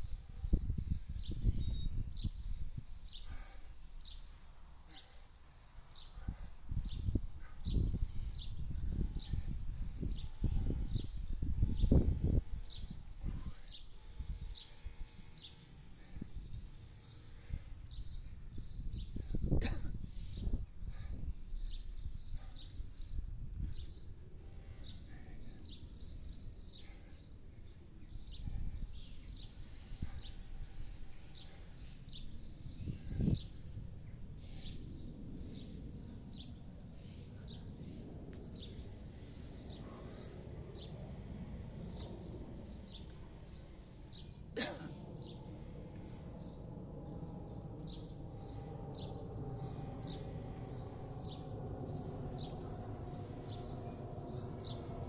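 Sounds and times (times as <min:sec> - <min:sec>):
bird chirping: 0:00.0 - 0:04.3
low rumbling background noise: 0:00.0 - 0:55.0.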